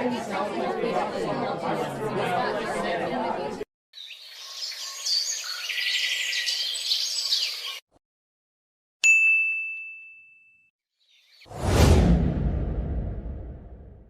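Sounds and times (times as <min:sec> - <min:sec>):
birds chirping: 0:04.0 - 0:07.8
bright bell-like ding: 0:09.0 - 0:10.7.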